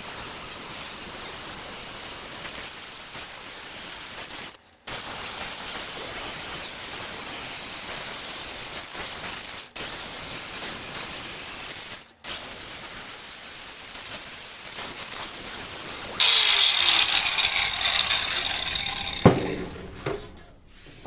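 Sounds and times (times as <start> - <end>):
power tool whining: 16.2 - 20.7.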